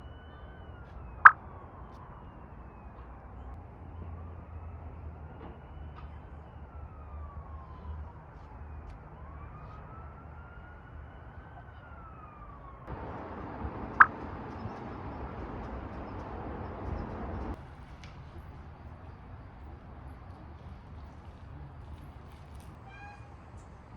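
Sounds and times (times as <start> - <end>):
emergency vehicle siren wailing: 0.0 - 17.6.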